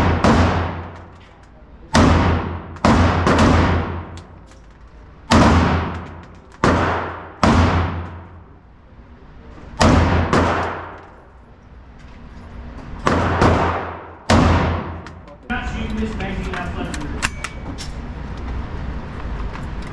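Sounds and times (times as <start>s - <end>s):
gunshots echoing: 0.0s - 1.2s, 1.9s - 4.4s, 5.2s - 8.5s, 9.8s - 11.2s, 13.0s - 15.2s.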